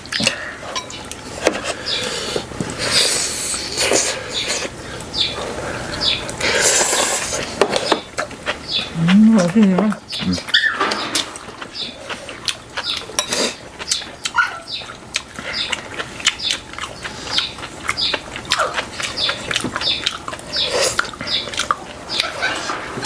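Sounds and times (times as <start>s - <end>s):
chewing and slurping: 0.1s - 23.0s.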